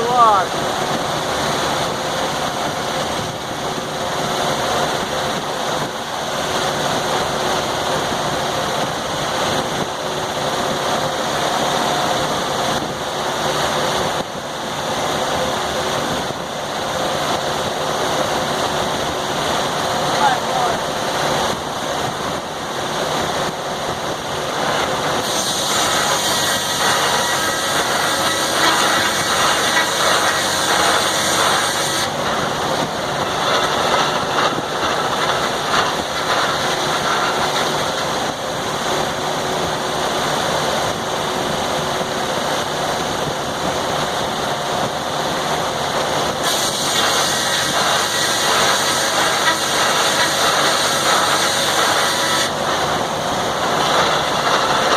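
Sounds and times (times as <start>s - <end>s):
circular saw cutting log: 24.6s - 38.2s, 46.4s - 52.9s.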